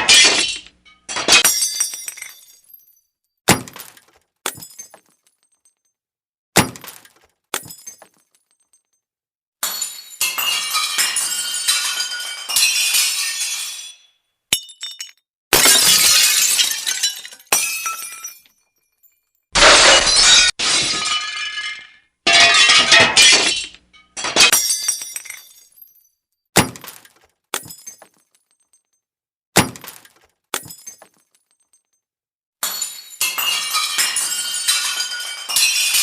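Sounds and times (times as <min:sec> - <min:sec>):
glass smashing: 0:00.0 - 0:05.8, 0:06.6 - 0:08.9, 0:09.6 - 0:28.9, 0:29.6 - 0:32.0, 0:32.6 - 0:36.0
glass shards tinkling: 0:09.6 - 0:15.2, 0:32.6 - 0:36.0.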